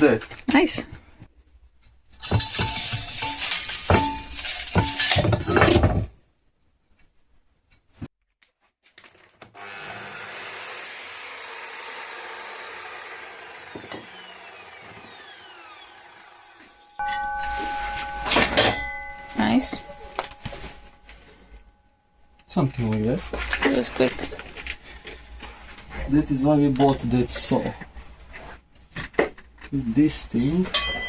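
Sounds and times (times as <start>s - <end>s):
metal knocking and rattling: 2.1s - 6.1s
power saw cutting steel: 9.6s - 17.3s
steady ringing tone: 16.8s - 27.8s, 30.8s - 31.0s.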